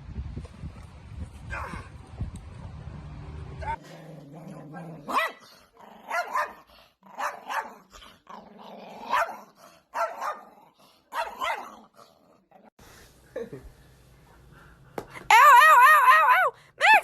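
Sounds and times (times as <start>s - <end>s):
dog barking: 5.0s - 5.4s, 6.1s - 7.9s, 9.1s - 10.5s, 11.1s - 11.8s.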